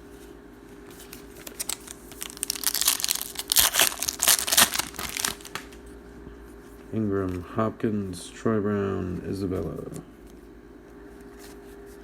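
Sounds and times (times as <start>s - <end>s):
plastic wrapper tearing and crinkling: 1.1s - 5.8s.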